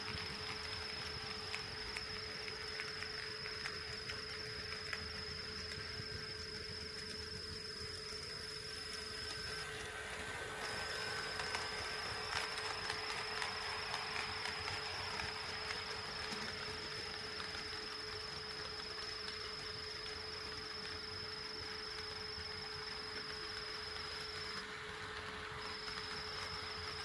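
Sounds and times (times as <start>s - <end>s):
high-pitched whine: 0.0s - 27.0s
model train wheels clicking: 9.2s - 20.1s.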